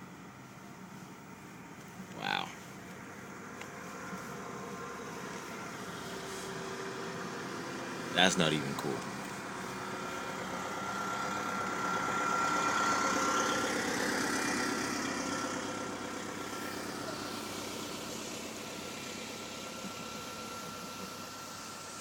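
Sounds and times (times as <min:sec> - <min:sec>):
vehicle engine running with whine: 0:00.0 - 0:22.0.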